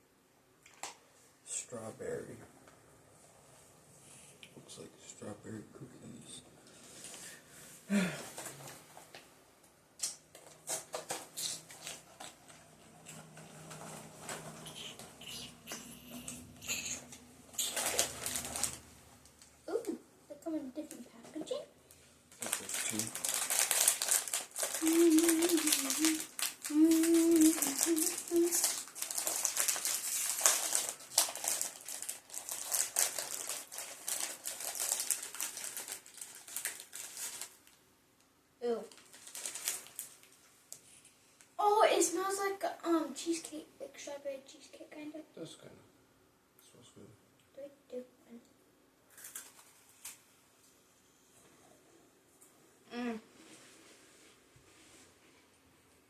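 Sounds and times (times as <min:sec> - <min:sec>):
plastic packaging crinkling: 0:10.3 - 0:19.5, 0:22.3 - 0:37.8, 0:38.9 - 0:40.5, 0:49.1 - 0:50.2.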